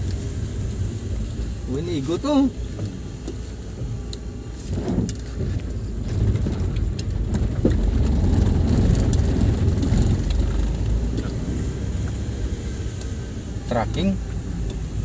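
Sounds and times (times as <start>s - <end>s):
van engine and road rumble: 0.0s - 15.0s
light ticks: 4.1s - 4.3s, 12.9s - 13.2s, 14.6s - 14.9s.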